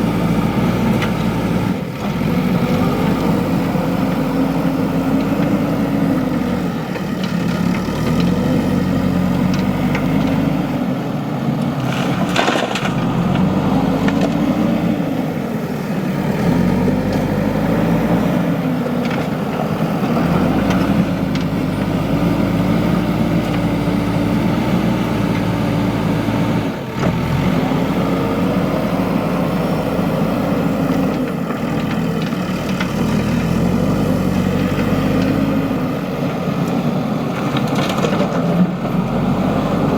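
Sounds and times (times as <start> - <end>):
diesel engine under hydraulic load: 0.0 - 39.9.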